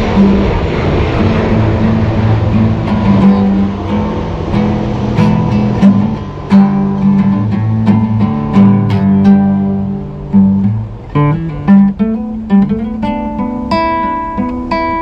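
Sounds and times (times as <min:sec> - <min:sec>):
guitar strumming chords: 0:00.0 - 0:15.0.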